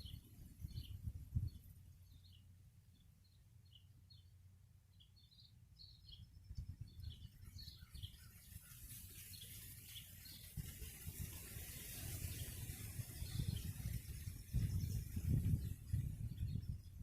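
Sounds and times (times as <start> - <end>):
small birds chirping: 0.0 - 17.0
hiss: 8.7 - 14.3
low gusty rumble: 12.3 - 17.0.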